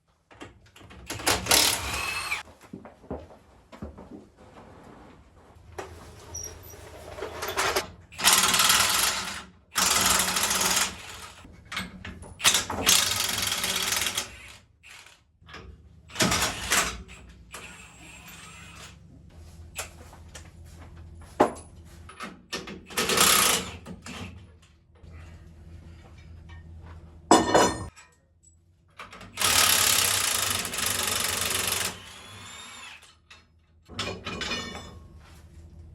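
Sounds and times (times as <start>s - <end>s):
tools and parts clanking: 6.1s - 7.9s, 11.4s - 13.2s, 19.7s - 29.4s, 33.2s - 35.4s.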